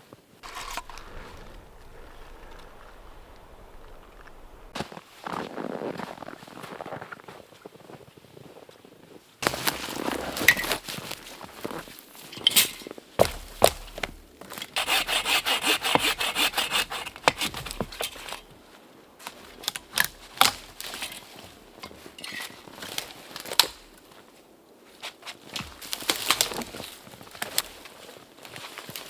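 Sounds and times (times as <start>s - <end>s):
hand saw cutting wood: 0.4s - 4.8s, 14.8s - 18.5s.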